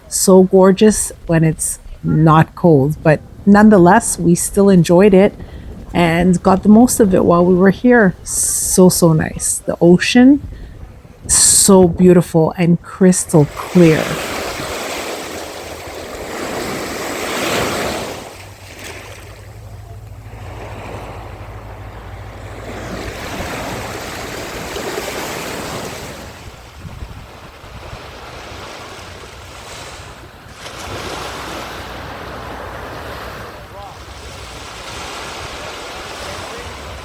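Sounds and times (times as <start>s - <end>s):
ocean waves washing on beach: 0.0s - 37.0s
wind buffeting microphone: 1.1s - 18.6s, 19.4s - 28.7s.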